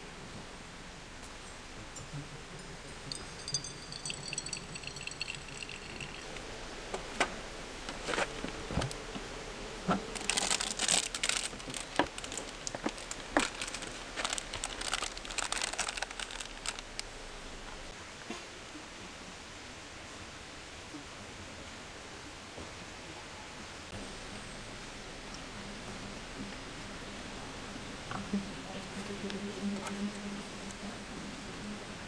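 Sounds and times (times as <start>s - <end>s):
crinkling and rustling: 4.0s - 17.9s
dense crackling: 10.1s - 17.1s.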